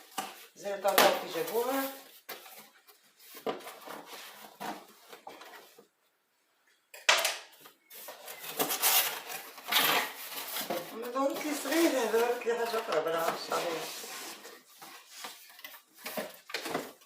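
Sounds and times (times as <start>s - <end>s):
packaging rustling: 7.9s - 17.0s.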